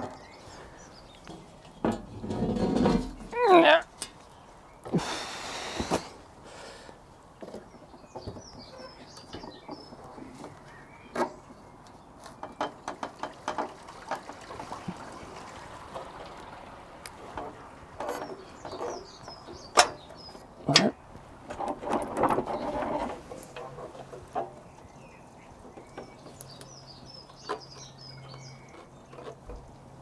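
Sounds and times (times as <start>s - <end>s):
birds chirping: 0.0s - 30.0s.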